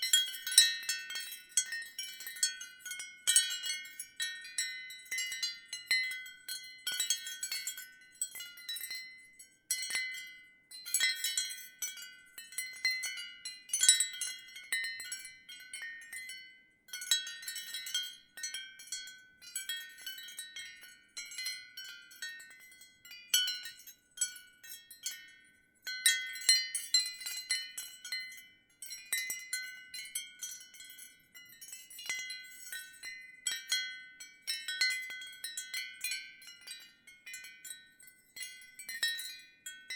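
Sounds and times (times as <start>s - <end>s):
ceramic wind chimes clinking: 0.0s - 39.9s.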